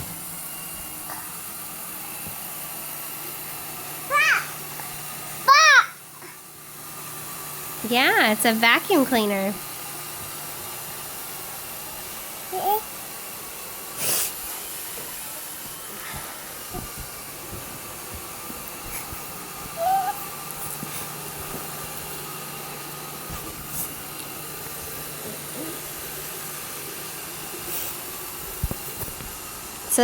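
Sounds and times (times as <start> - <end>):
robot vacuum whirring: 6.7 - 30.0.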